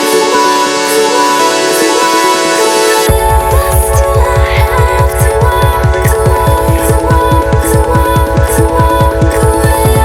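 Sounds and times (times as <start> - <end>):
electronic dance music: 0.0 - 10.0.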